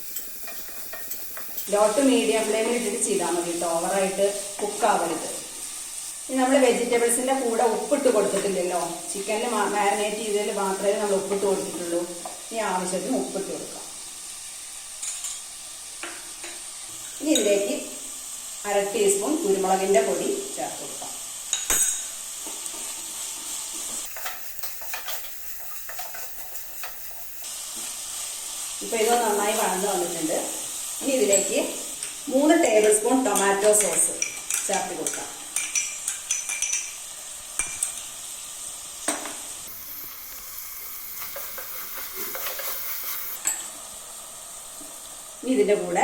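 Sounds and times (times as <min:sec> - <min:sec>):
spatula scraping a pan: 0:00.0 - 0:01.7, 0:24.1 - 0:27.5, 0:39.7 - 0:43.4
vegetables sizzling in hot oil: 0:00.0 - 0:46.0.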